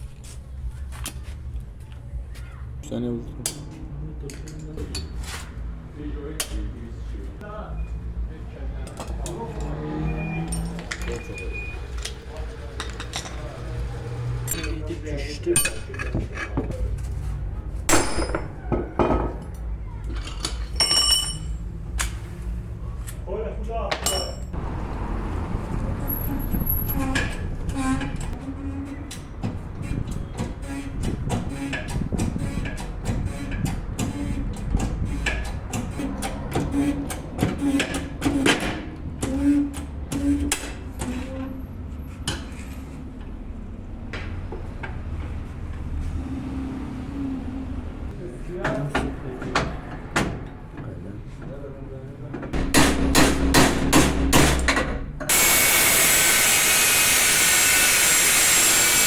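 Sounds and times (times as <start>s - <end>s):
low workshop hum: 0.0s - 59.0s
metal tools clanking: 4.3s - 5.4s, 8.8s - 13.8s, 14.4s - 22.2s, 23.9s - 24.6s
metal parts knocking and clinking: 10.4s - 13.4s, 15.5s - 16.8s, 17.9s - 21.6s, 23.9s - 24.6s.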